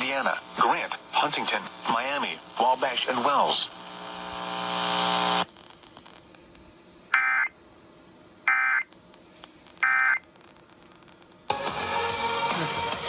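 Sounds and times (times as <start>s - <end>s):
steady hum: 0.0s - 13.0s
digital data tone bursts: 7.1s - 7.6s, 8.5s - 8.9s, 9.8s - 10.2s.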